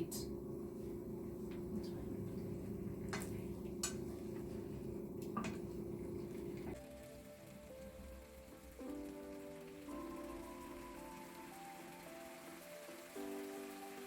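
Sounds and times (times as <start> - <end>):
steady low hum: 0.0 - 6.8
soft music: 0.0 - 14.0
chicken frying in a pan: 6.5 - 14.0.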